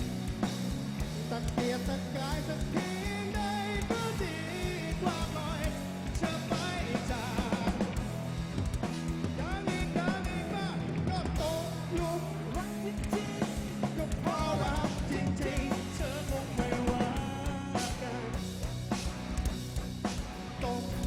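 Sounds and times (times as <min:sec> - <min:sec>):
live rock band playing: 0:00.0 - 0:21.0
melodic lead guitar line: 0:00.0 - 0:21.0.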